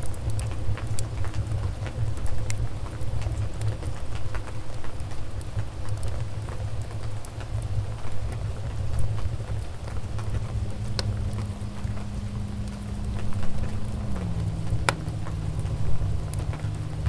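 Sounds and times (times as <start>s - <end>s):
fire popping: 0.0s - 17.0s
wood fire crackling: 0.0s - 17.0s
faint low hum: 7.6s - 17.0s.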